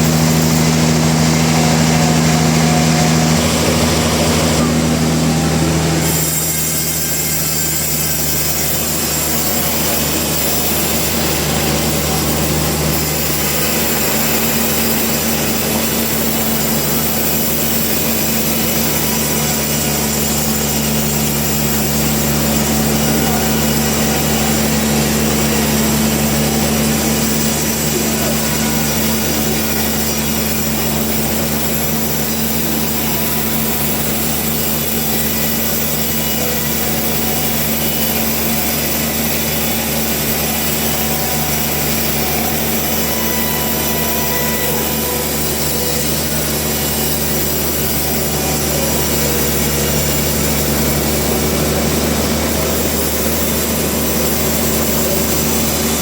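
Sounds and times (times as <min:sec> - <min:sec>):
machine hum: 0:00.0 - 0:56.0
saw cutting through wood: 0:00.0 - 0:56.0.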